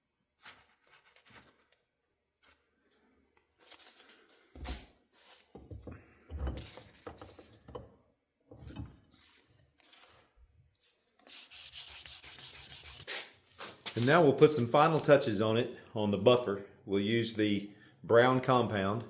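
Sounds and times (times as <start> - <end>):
scraping and rubbing: 11.3 - 14.1.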